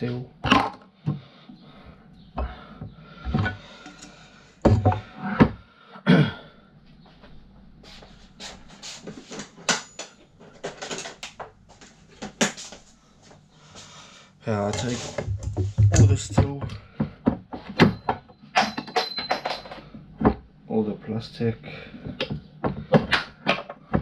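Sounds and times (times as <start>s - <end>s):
metal scooter parts clinking: 17.9s - 19.9s.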